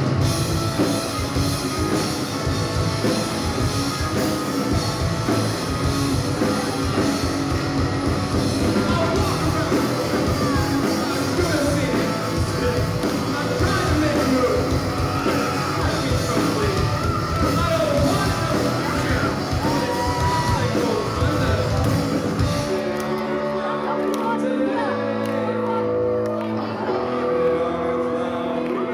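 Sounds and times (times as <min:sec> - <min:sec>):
loud drums: 0:00.0 - 0:23.0
electric guitar: 0:00.0 - 0:28.9
person singing: 0:08.6 - 0:28.9.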